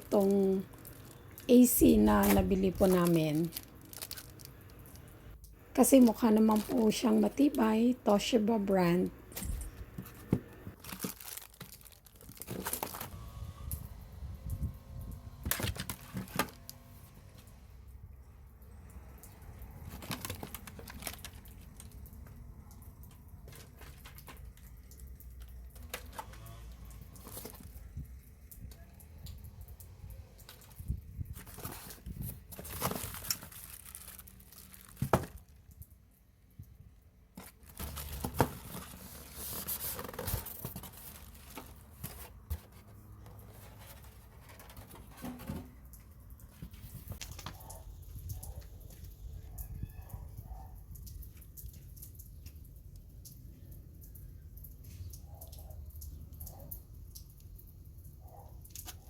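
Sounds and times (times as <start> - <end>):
packaging tearing and crinkling: 0.0 - 5.1, 9.3 - 13.2, 15.3 - 16.8, 19.8 - 22.1, 30.5 - 35.8, 37.4 - 45.4
packaging rustling: 0.0 - 5.4, 9.3 - 13.4, 15.4 - 16.8, 19.8 - 22.1, 23.4 - 24.8, 30.5 - 35.6, 37.4 - 45.8.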